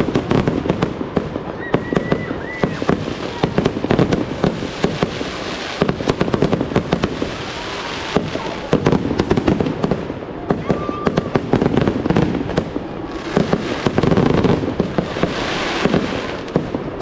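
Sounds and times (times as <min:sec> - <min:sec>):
fireworks bangs and crackling: 0:00.0 - 0:17.0
hissing crackle: 0:00.0 - 0:17.0.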